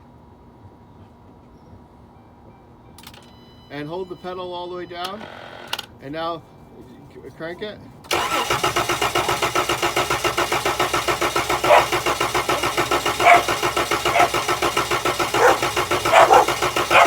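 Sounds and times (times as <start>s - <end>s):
car engine cranking on starter: 8.1s - 17.0s.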